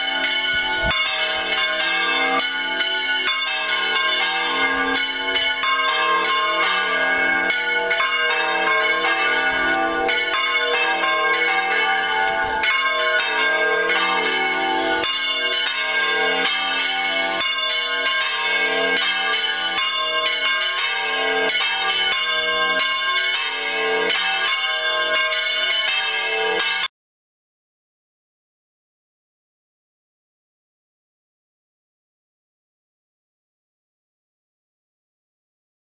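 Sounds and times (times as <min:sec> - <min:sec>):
church bells pealing: 0:00.0 - 0:26.9.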